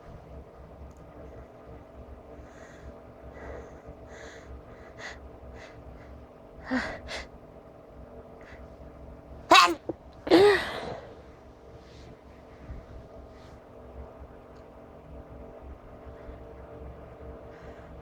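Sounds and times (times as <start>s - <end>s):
person sniffing: 9.5s - 9.8s
person sneezing loudly: 9.5s - 10.9s.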